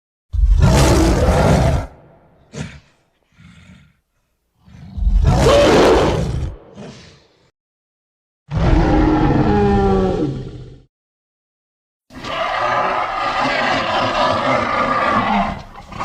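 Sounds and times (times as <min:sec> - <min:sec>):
creature growl: 0:00.4 - 0:04.0, 0:04.6 - 0:07.5, 0:08.5 - 0:10.9, 0:12.2 - 0:16.0
low creature roars: 0:00.4 - 0:04.0, 0:04.6 - 0:07.5, 0:08.5 - 0:10.9, 0:12.1 - 0:16.0.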